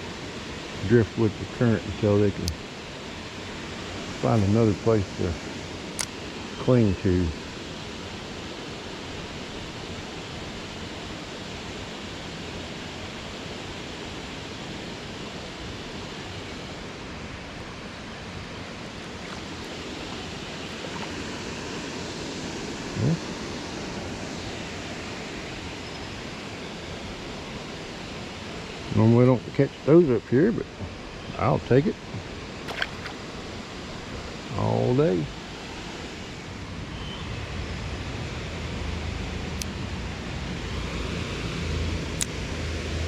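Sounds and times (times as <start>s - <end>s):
creek water rushing: 0.0s - 30.1s, 30.8s - 36.9s, 38.1s - 43.0s.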